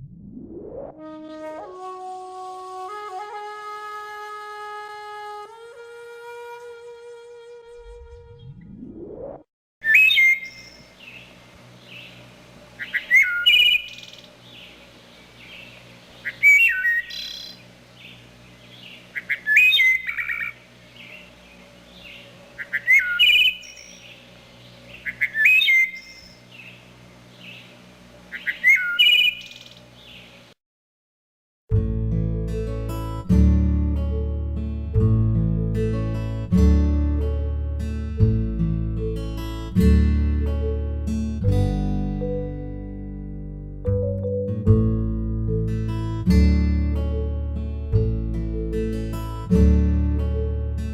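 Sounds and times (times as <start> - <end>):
wood thrush singing: 9.8 - 30.4.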